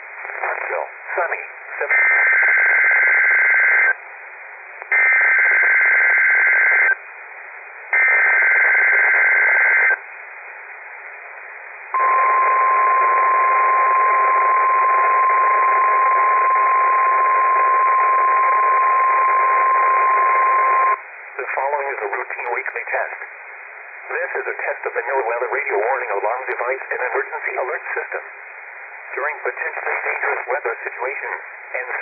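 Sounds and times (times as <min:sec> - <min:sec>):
radio hiss: 0:00.0 - 0:04.0, 0:07.9 - 0:10.0, 0:10.9 - 0:32.0
steady warning alarm tone: 0:12.0 - 0:21.0
two-tone data bursts: 0:12.0 - 0:21.0.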